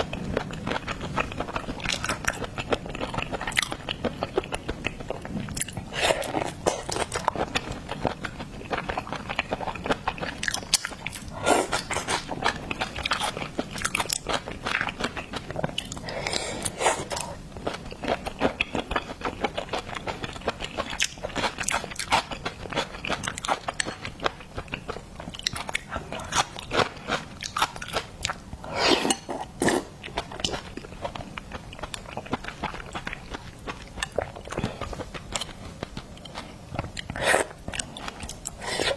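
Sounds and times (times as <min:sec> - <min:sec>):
crunching and chewing food: 0:00.0 - 0:38.9.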